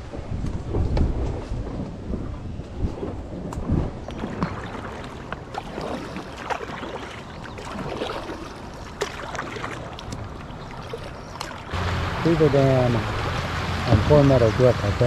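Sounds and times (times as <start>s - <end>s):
water splashing and dripping: 3.5s - 14.8s.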